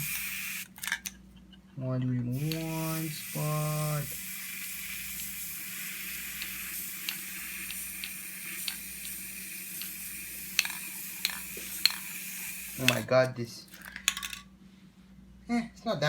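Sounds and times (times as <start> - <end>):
steady hiss: 0.0 - 0.8, 2.4 - 13.7.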